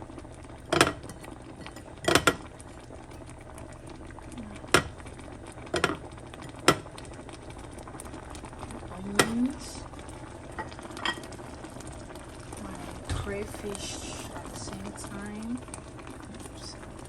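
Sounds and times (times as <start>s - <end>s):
sauce bubbling in a pot: 0.0s - 17.0s
spoon knocking against a pot: 0.7s - 2.4s, 6.6s - 6.9s.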